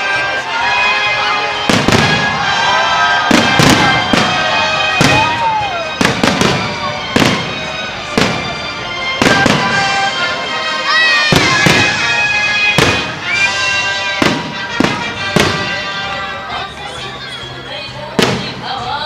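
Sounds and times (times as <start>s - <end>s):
music playing: 0.0s - 19.0s
fireworks bangs: 1.6s - 10.4s, 11.2s - 16.3s.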